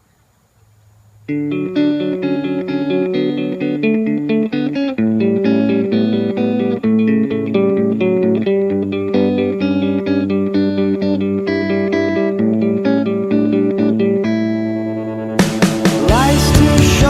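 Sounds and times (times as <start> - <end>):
guitar picking notes: 1.3 - 17.0
bass line: 13.9 - 17.0.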